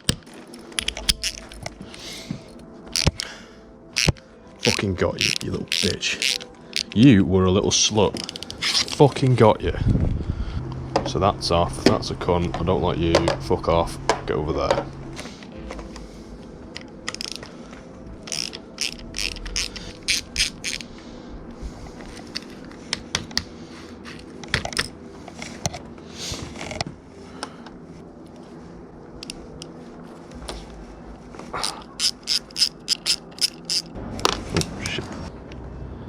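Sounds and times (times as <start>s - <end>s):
ratchet wrench clicking: 0.8s - 1.7s, 2.9s - 3.3s, 4.0s - 7.0s, 8.2s - 9.0s, 17.1s - 17.4s, 18.2s - 20.9s, 31.7s - 33.9s.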